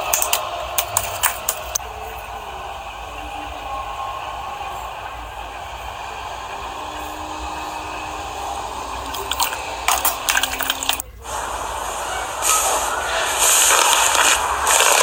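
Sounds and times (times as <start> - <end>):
slime soft hiss: 11.2 - 15.0.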